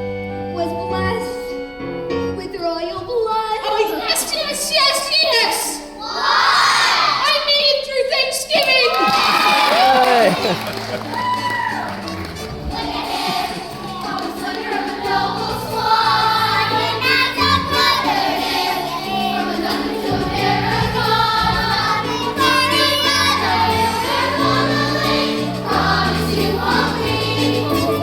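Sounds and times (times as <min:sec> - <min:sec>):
instrumental accompaniment: 0:09.6 - 0:28.0
chorus of young voices singing: 0:12.3 - 0:28.0.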